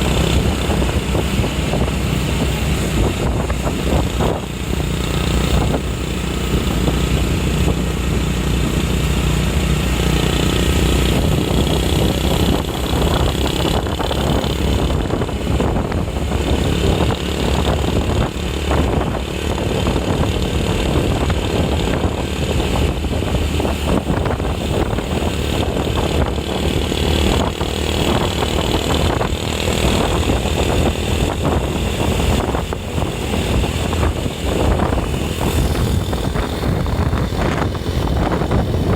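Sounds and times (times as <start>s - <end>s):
road noise: 0.0s - 38.9s
vehicle engine running: 0.0s - 38.9s.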